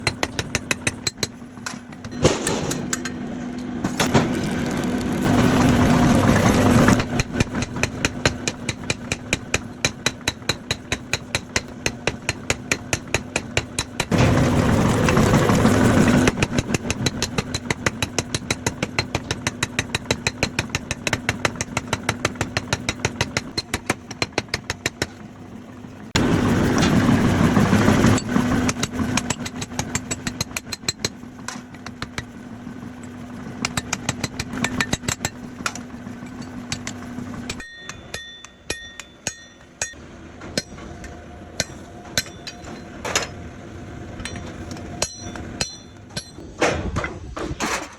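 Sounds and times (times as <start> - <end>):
power hammer pounding steel: 0.0 - 4.5, 5.2 - 25.4, 26.1 - 46.7
steady machine hum: 0.0 - 46.6
hammer blows ringing on metal: 36.4 - 40.0, 44.2 - 46.4.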